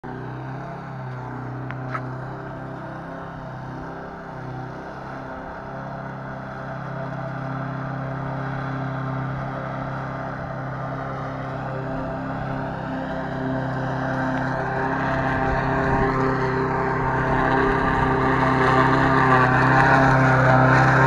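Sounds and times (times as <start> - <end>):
small mower engine running: 0.0 - 21.0.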